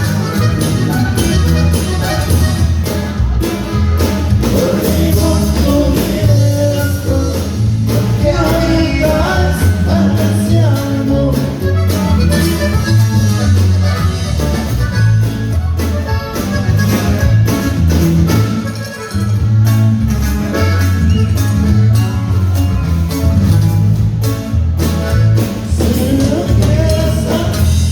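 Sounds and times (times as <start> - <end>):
accordion melody: 0.0 - 27.9
bouncing bass line: 0.0 - 27.9
person singing: 4.4 - 12.2, 25.6 - 27.9.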